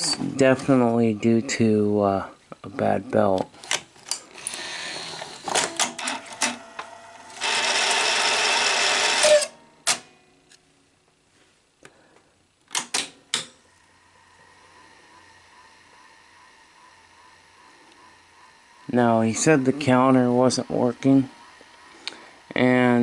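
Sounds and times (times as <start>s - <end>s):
tape deck motor whirring: 4.2s - 9.6s, 13.7s - 23.0s.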